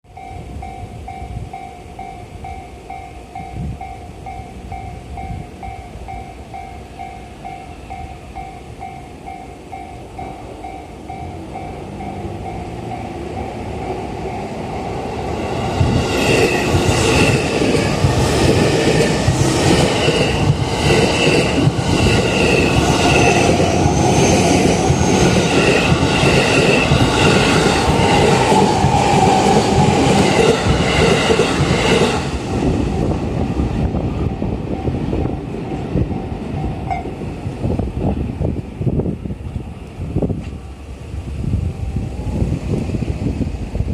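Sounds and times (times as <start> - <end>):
high ringing tones: 0.1 - 15.1
train wheels clattering over rails: 15.3 - 33.7.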